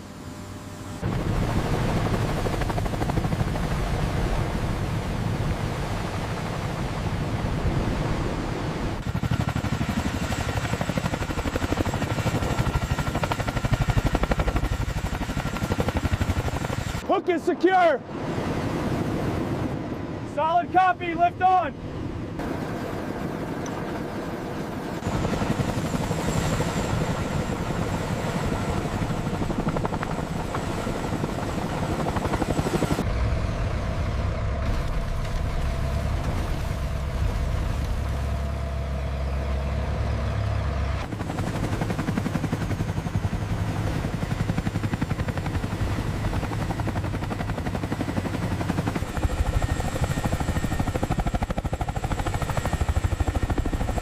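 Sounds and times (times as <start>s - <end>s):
helicopter rotor beat: 0.0s - 54.0s
turbine noise: 25.0s - 47.2s.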